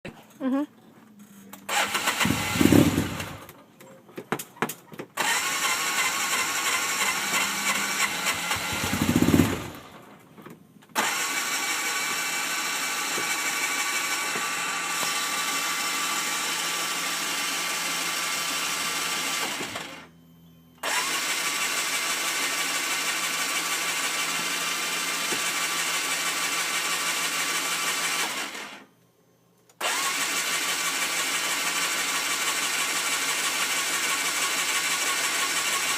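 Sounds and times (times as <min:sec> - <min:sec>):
vehicle starter cranking: 0:01.7 - 0:03.5, 0:05.2 - 0:10.1, 0:10.9 - 0:15.7, 0:20.8 - 0:21.6, 0:29.8 - 0:35.9
low engine rumbles: 0:06.4 - 0:10.4.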